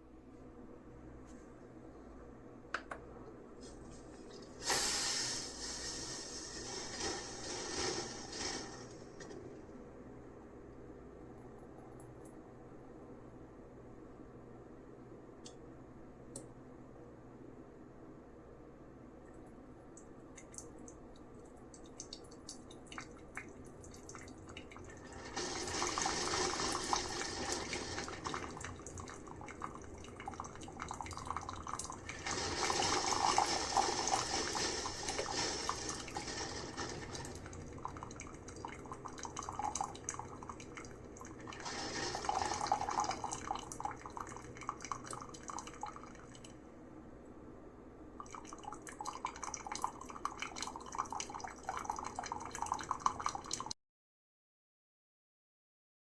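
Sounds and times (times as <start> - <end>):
coffee streaming into cup: 4.4 - 9.8, 24.0 - 46.4
coffee dripping: 19.3 - 46.6, 48.2 - 53.7.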